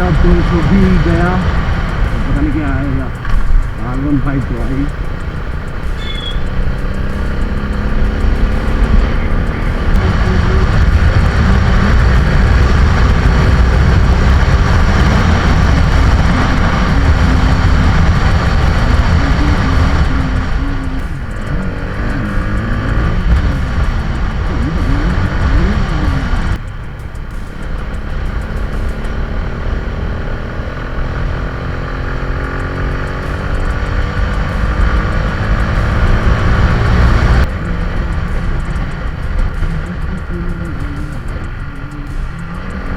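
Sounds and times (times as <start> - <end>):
motorcycle engine running: 0.0 - 42.9
wind rushing over microphone: 0.0 - 42.9.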